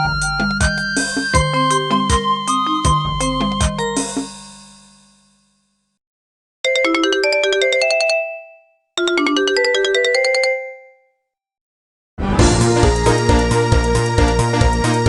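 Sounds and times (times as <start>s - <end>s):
bright melodic phone ringtone: 0.0s - 4.4s, 6.6s - 11.2s
fuller ringtone: 0.0s - 5.3s, 6.6s - 11.2s.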